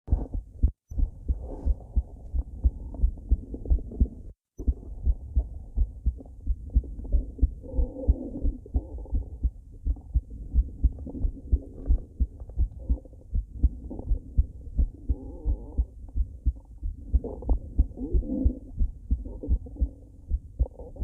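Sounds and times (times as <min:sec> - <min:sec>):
heartbeat double thumps: 0:00.0 - 0:21.0
stomach gurgling: 0:02.4 - 0:15.9, 0:16.5 - 0:21.0.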